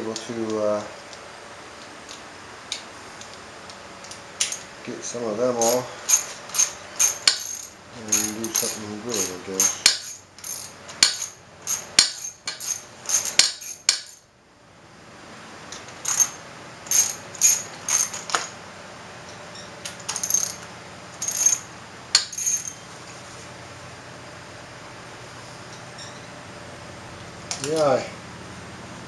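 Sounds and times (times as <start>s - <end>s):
wrench clinking on metal bolts: 4.0s - 4.7s, 5.6s - 14.3s, 15.7s - 18.6s, 19.2s - 22.9s, 25.7s - 26.3s.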